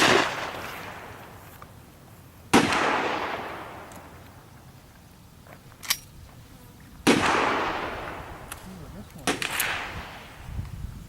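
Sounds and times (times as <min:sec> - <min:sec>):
shotgun blast echo: 0:00.0 - 0:01.1, 0:02.5 - 0:04.1, 0:07.0 - 0:08.6, 0:09.2 - 0:10.4.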